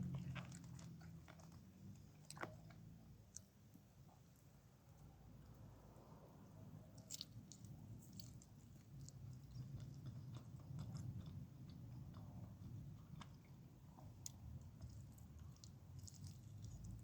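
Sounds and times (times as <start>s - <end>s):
chewing food: 0.0s - 3.5s, 7.0s - 17.0s.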